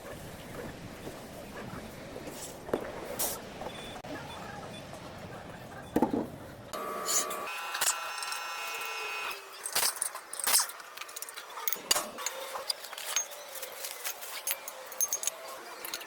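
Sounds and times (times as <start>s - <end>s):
metal tools clinking: 9.5s - 16.0s.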